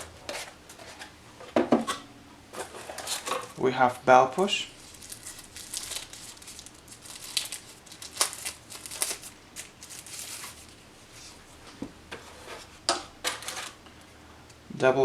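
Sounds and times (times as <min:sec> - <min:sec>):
packaging crinkling and rustling: 0:02.6 - 0:03.6, 0:04.8 - 0:10.8, 0:13.2 - 0:13.8.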